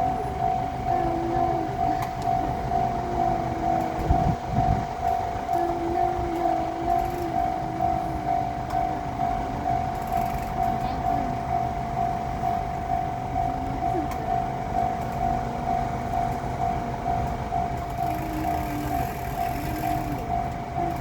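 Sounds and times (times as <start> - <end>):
level crossing alarm ringing: 0.0 - 21.0
low rumble of train: 0.0 - 21.0.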